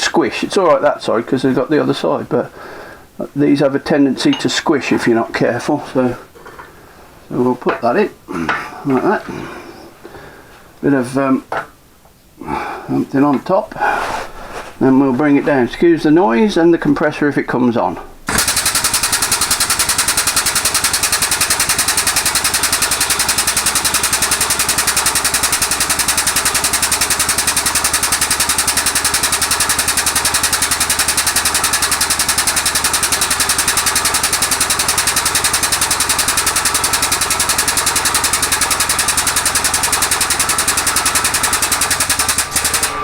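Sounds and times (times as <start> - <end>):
pneumatic jack hissing and pulsing: 18.3 - 43.0.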